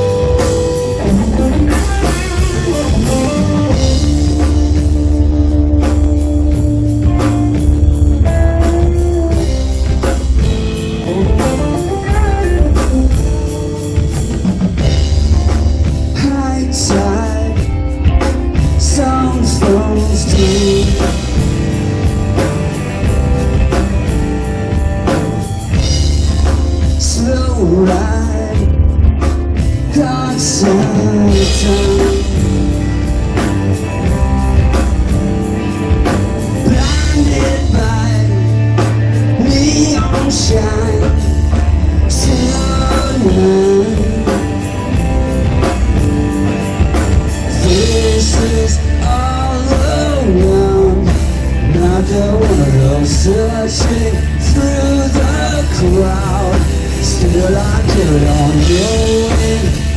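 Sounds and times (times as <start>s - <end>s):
drum kit: 0.0s - 59.9s
electric guitar: 0.0s - 59.9s.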